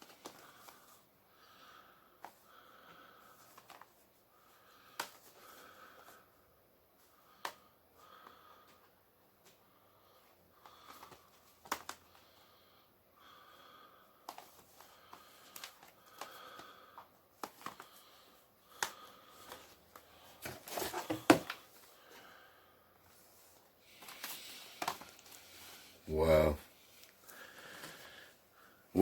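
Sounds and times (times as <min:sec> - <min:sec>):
plastic cases clicking and tapping: 0:10.9 - 0:12.1, 0:17.0 - 0:17.9.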